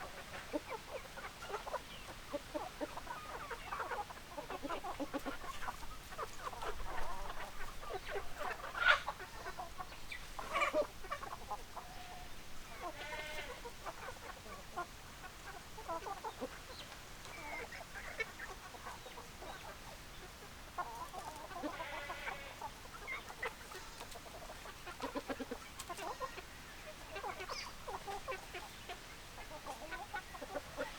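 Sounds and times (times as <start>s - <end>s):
chickens clucking: 0.0s - 30.9s
chicken squawks: 10.4s - 14.2s, 20.8s - 30.9s.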